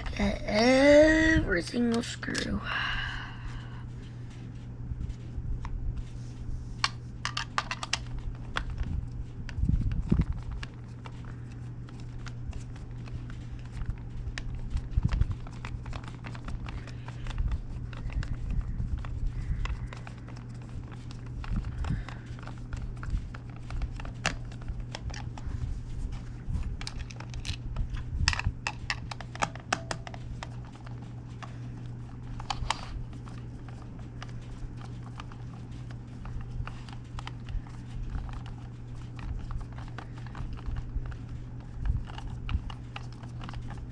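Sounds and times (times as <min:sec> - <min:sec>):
low steady hum: 0:00.0 - 0:43.9
screwdriver clicking on plastic: 0:06.8 - 0:08.9, 0:13.7 - 0:25.5, 0:28.3 - 0:31.5, 0:32.2 - 0:43.9.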